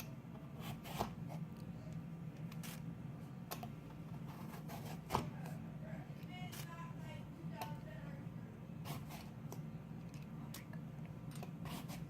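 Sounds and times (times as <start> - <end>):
peeler scraping apple skin: 2.4 - 2.8.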